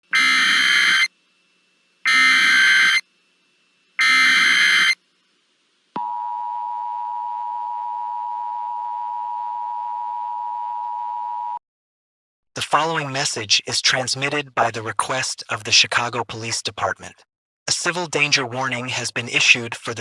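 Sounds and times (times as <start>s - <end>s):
data bursts: 0.0s - 1.1s, 2.1s - 3.0s, 4.0s - 5.0s
steady attention signal tone: 0.1s - 1.1s, 2.0s - 3.0s, 4.0s - 5.0s, 6.0s - 11.6s.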